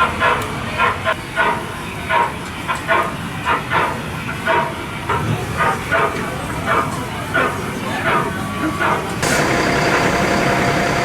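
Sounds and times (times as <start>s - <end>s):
level-crossing warning bell ringing: 9.2s - 11.0s.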